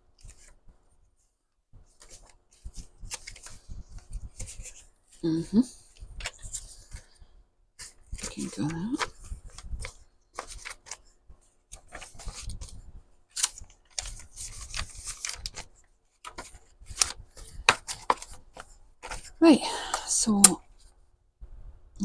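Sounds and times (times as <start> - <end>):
paper rustling: 1.9 - 4.9, 7.8 - 11.1, 11.7 - 19.4.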